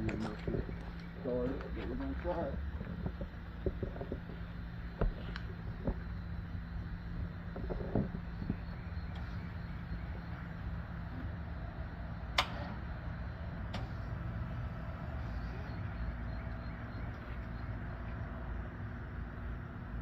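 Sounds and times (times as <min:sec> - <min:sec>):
steady low hum: 0:00.0 - 0:20.0
sharp clicks: 0:12.3 - 0:12.8.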